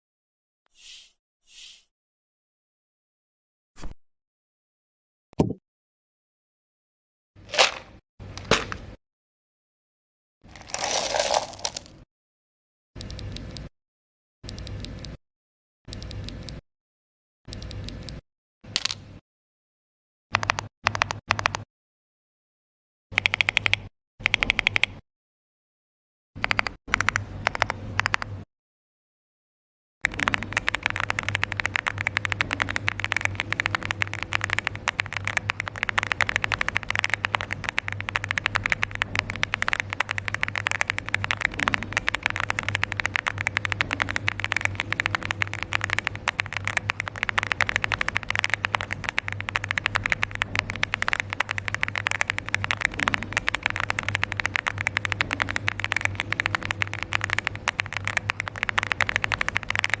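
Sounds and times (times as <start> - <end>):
mechanical keyboard typing: 20.4 - 21.6, 23.2 - 25.0, 26.4 - 28.4, 30.0 - 60.0
faint steady hum: 30.1 - 60.0.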